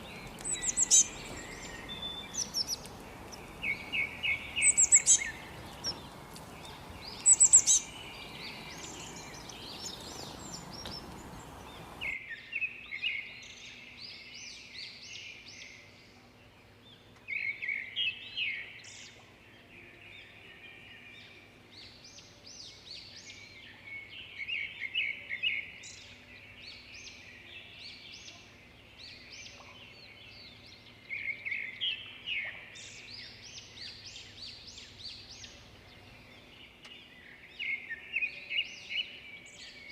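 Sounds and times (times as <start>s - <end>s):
background hiss: 0.0s - 12.2s
songbirds chirping and singing: 0.0s - 39.9s.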